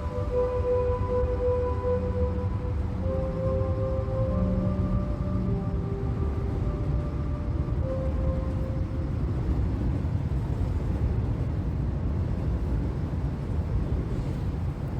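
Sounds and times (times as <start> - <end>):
held music notes: 0.0 - 10.8
outdoor ambience rumble: 0.0 - 14.9.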